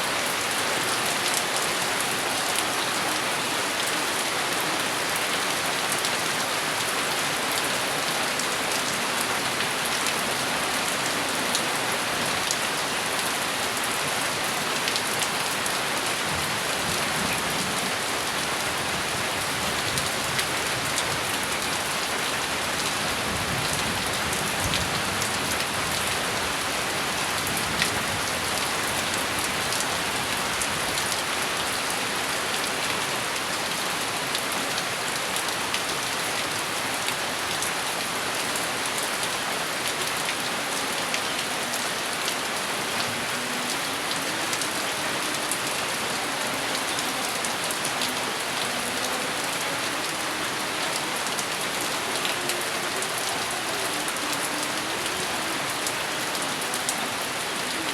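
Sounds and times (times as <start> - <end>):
steady rain falling: 0.0 - 57.9.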